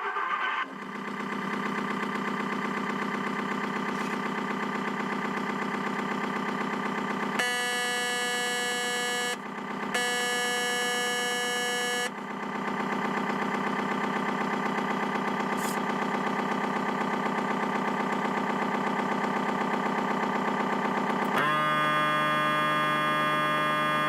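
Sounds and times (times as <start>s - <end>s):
simulated diesel engine idling: 0.0s - 24.0s
long horn blasts: 7.4s - 9.4s, 10.0s - 12.1s.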